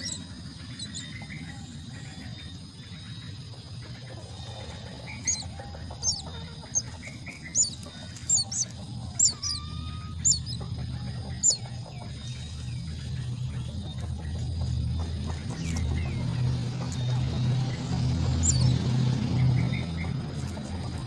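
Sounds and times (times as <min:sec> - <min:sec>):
bird chicks chirping: 0:00.0 - 0:21.0
low rumble: 0:03.4 - 0:21.0.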